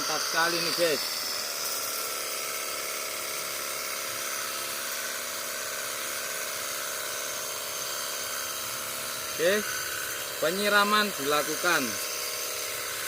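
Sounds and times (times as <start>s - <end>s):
electric pump motor hum: 0.0s - 13.0s
water jet hissing: 8.7s - 13.0s.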